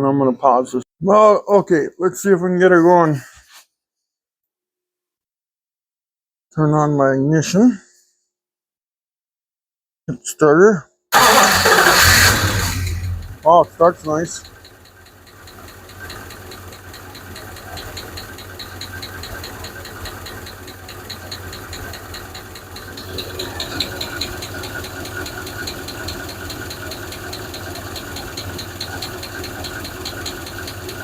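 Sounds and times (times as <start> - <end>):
engine idling: 11.2 - 31.0
rhythmic lifter tick: 13.2 - 31.0.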